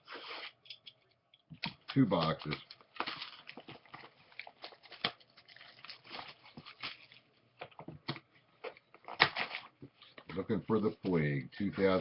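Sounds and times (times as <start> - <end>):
plastic wrapping crinkling and tearing: 1.9 - 7.6, 8.6 - 10.5.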